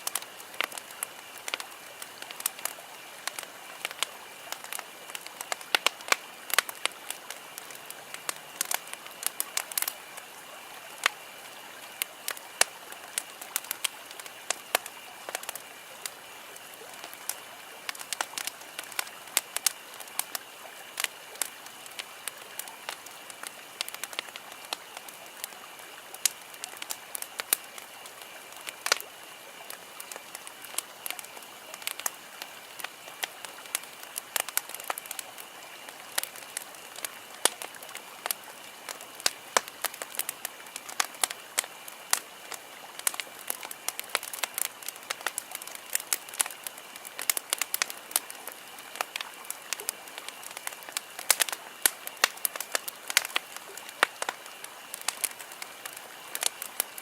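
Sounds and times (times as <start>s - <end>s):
campfire crackling and popping: 0.0s - 57.0s
steady hiss: 0.0s - 57.0s.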